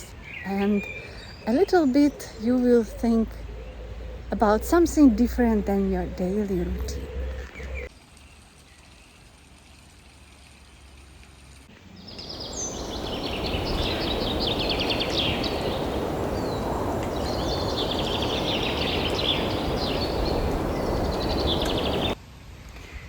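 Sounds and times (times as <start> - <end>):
songbirds trilling: 0.0 - 7.9, 11.9 - 22.2
steady rushing noise: 12.2 - 22.2.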